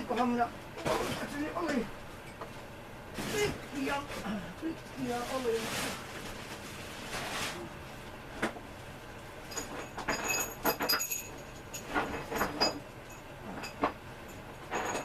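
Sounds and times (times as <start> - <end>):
metal screws clinking and rattling: 9.5 - 15.0.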